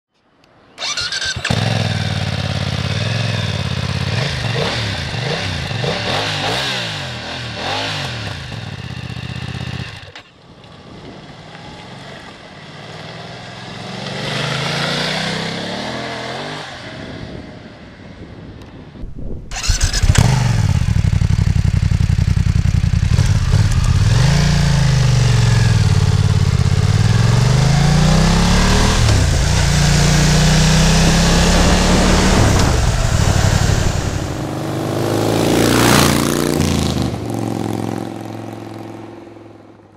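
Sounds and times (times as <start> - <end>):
motorcycle engine revving: 0.8 - 10.3, 19.1 - 39.1.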